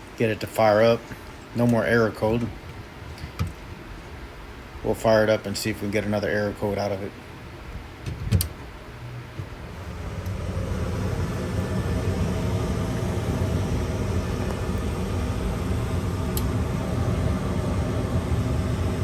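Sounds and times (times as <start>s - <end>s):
furnace inducer motor humming: 8.8s - 19.0s.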